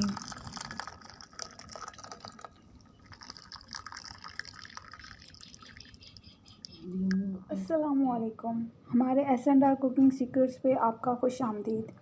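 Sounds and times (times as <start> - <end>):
small liquid splashes: 0.0 - 6.8
light water drips: 0.0 - 7.3.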